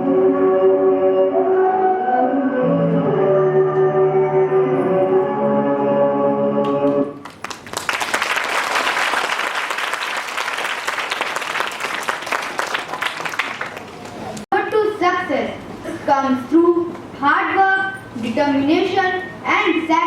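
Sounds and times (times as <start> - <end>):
held music notes: 0.0 - 7.2
audience applauding: 6.6 - 14.4.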